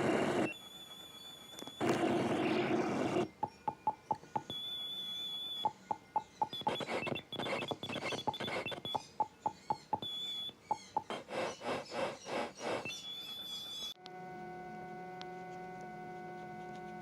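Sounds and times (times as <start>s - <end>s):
high steady whine: 0.0s - 3.3s, 14.0s - 17.0s
synthesizer blips and clicks: 1.6s - 3.3s, 5.9s - 10.4s
synthesizer noise bursts: 1.8s - 3.3s.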